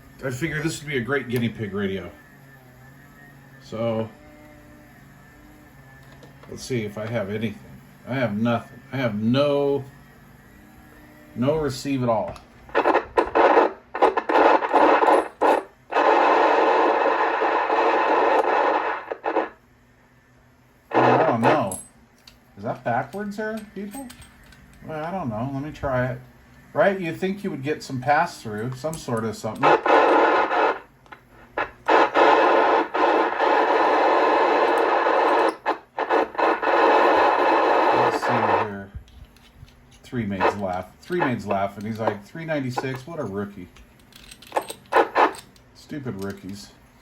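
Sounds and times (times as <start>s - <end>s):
radio static hiss: 11.4s - 19.7s, 20.9s - 21.8s, 24.8s - 39.0s, 40.1s - 43.7s, 44.9s - 46.8s.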